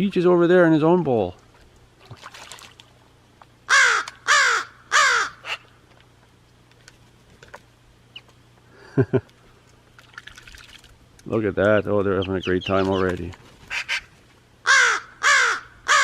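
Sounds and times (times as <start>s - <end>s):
crow cawing: 3.7s - 5.6s, 13.7s - 16.0s
low crow calls: 3.7s - 5.8s, 13.7s - 16.0s.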